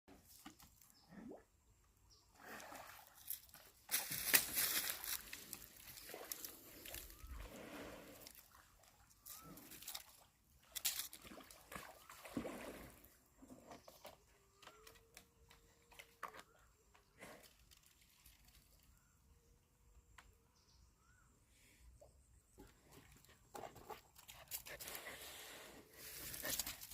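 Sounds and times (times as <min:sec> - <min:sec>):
water sloshing and splashing: 0:02.4 - 0:14.0.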